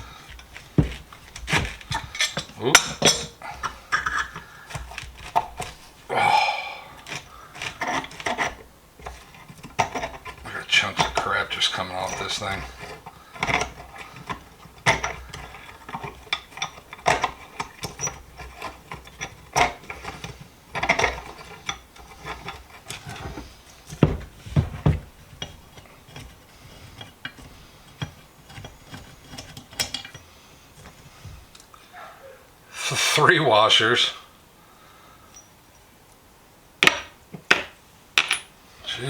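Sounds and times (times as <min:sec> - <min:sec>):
metal scraping and clanking: 0:00.0 - 0:06.1, 0:06.9 - 0:31.4
heavy metal knocks: 0:24.0 - 0:25.2.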